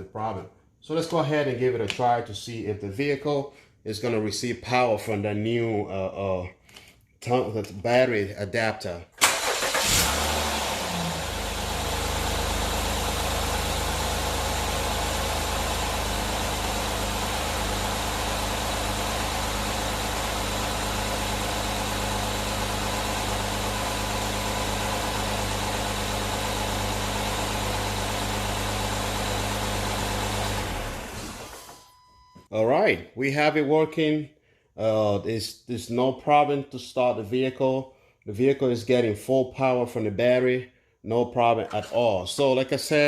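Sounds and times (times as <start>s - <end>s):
car engine starting and idling: 9.2s - 32.4s.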